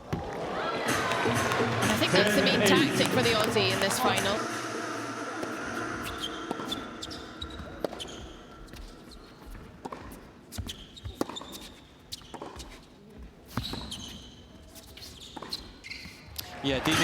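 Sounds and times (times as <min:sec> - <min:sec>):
ball bouncing on court: 0:01.0 - 0:04.3, 0:06.5 - 0:12.8, 0:13.5 - 0:14.4, 0:15.3 - 0:16.2
shoe squeaks: 0:05.8 - 0:16.4
racket striking ball: 0:06.1 - 0:08.4, 0:11.2 - 0:11.6.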